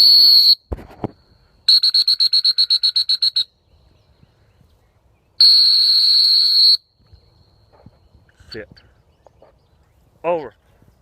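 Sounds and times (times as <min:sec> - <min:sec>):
dog whistle blasts and toots: 0:00.0 - 0:00.7, 0:01.7 - 0:03.5, 0:05.4 - 0:06.9.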